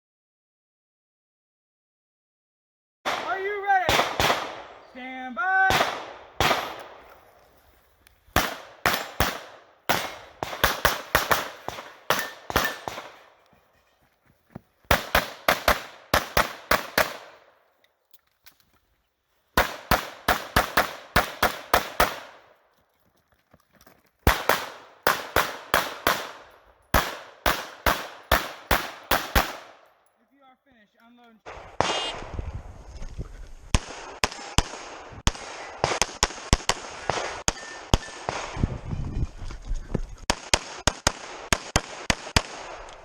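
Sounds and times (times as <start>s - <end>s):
pistol shots with echo: 3.1s - 7.1s, 8.4s - 13.4s, 14.9s - 17.6s, 19.6s - 22.6s, 24.3s - 29.9s.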